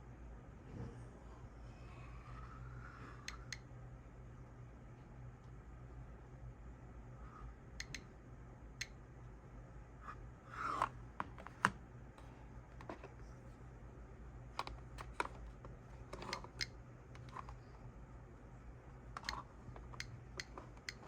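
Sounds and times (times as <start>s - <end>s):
steady low hum: 0.0s - 21.0s
radiation detector clicking: 7.8s - 8.1s, 16.1s - 17.6s, 19.2s - 21.0s.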